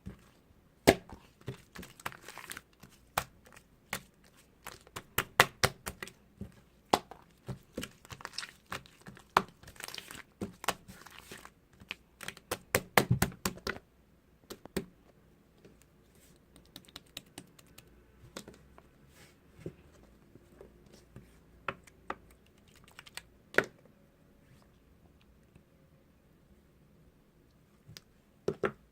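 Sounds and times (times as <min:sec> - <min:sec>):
slime clicking and crackling: 0:07.0 - 0:13.6.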